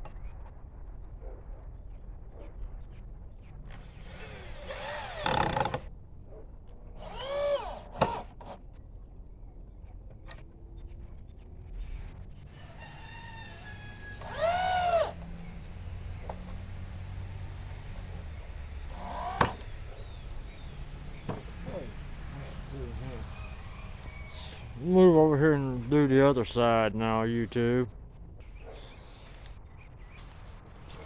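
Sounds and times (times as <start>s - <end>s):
power drill driving screws: 3.7s - 5.9s, 6.9s - 8.6s, 12.8s - 24.8s.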